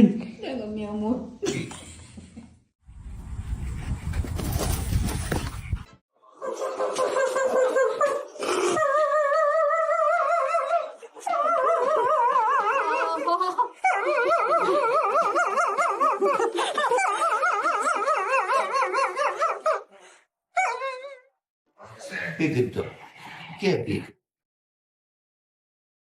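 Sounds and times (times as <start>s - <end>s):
dog howling: 8.8s - 13.2s.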